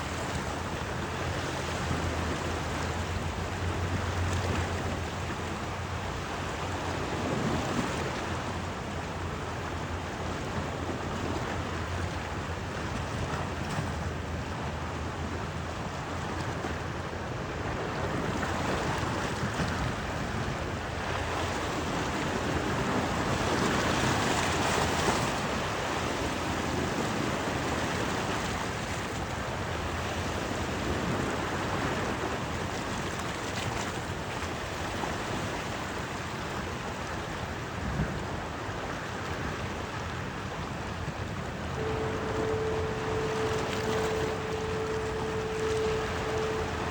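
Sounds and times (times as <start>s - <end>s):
waves washing: 38.6s - 46.9s.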